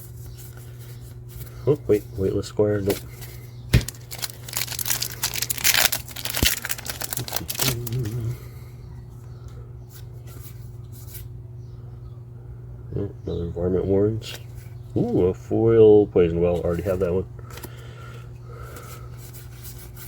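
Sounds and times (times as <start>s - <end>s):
crinkling rustle: 3.2s - 8.4s.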